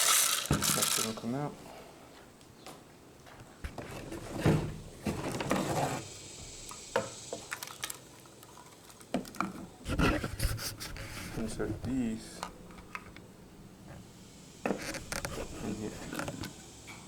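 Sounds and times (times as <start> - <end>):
plastic parts clicking and knocking: 0.0 - 1.1.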